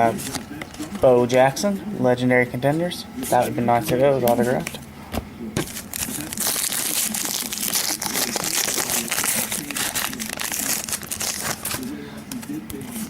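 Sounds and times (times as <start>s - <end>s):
wrapper crinkling: 5.6s - 12.5s.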